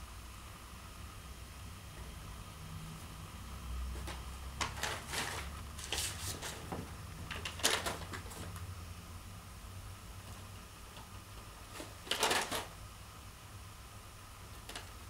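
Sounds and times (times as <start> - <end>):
chinchillas scuffling: 3.9 - 8.6.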